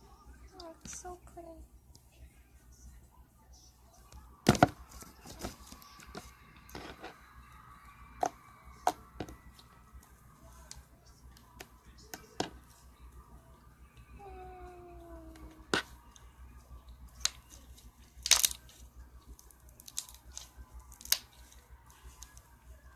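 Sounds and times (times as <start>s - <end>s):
slime squishing with clicks: 15.6s - 22.5s.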